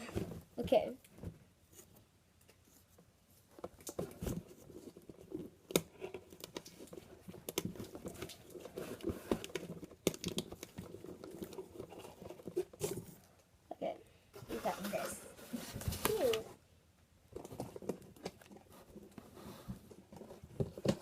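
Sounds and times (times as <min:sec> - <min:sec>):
crinkling and rustling: 0:00.0 - 0:13.5, 0:14.4 - 0:16.6, 0:17.3 - 0:21.0.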